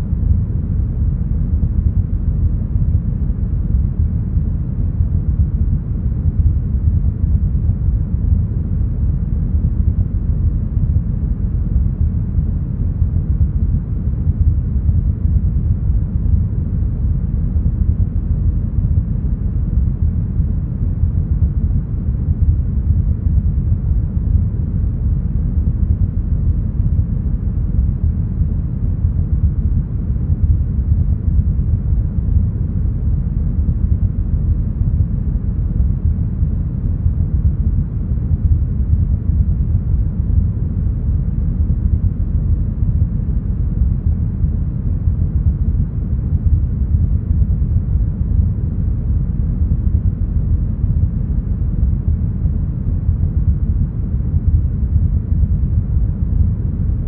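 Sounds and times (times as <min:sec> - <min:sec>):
low rumbling brown noise: 0:00.0 - 0:57.0.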